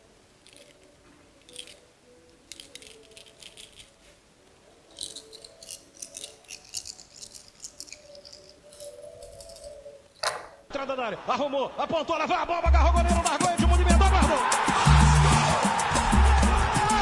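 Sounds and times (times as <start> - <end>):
shells clattering: 0.4 - 4.1, 4.9 - 10.8.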